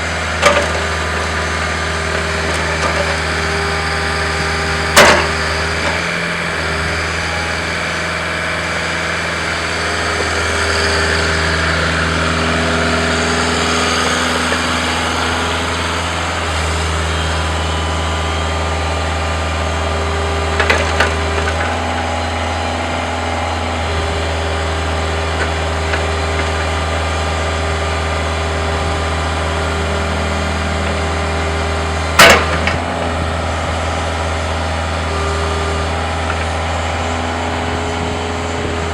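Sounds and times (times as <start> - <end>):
excavator diesel engine running: 0.0 - 38.9
sharp loud knocks: 4.9 - 6.0.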